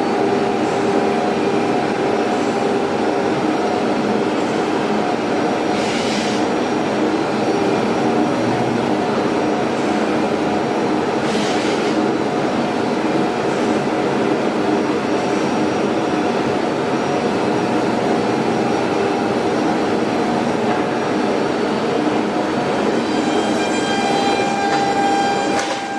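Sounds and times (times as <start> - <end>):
woodworking router running: 22.9 - 25.9.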